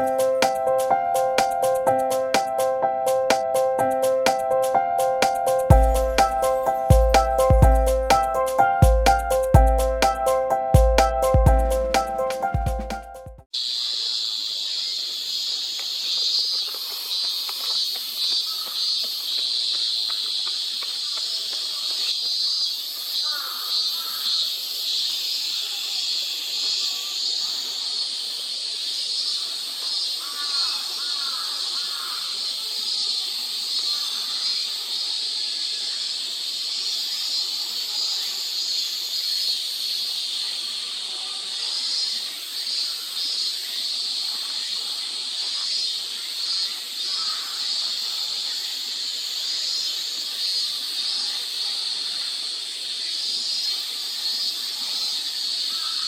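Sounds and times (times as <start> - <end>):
high-pitched insect chorus: 0.0 - 10.7, 13.6 - 56.0
high-pitched hissing drone: 0.0 - 12.5
higher pulsing insect note: 0.0 - 13.4.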